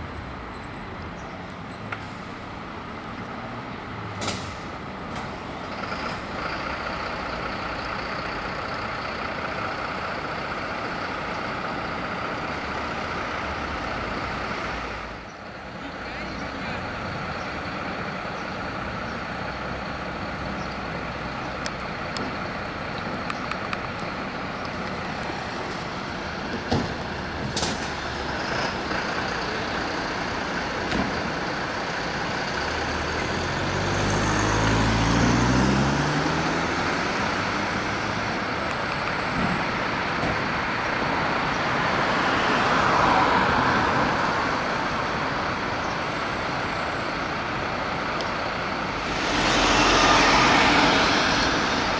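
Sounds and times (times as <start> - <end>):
diesel engines idling: 0.0 - 51.9
engine revving up: 32.4 - 38.4, 48.7 - 51.9.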